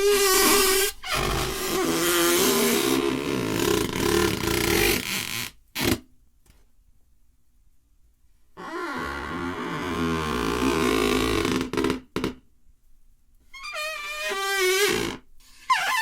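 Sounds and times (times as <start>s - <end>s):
rubber balloon squeaking: 0.0s - 6.1s, 8.6s - 12.4s, 13.5s - 16.0s.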